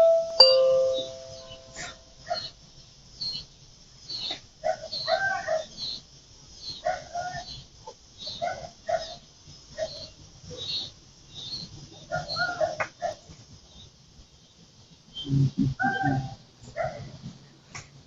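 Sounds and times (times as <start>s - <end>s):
doorbell chime: 0.0s - 1.8s.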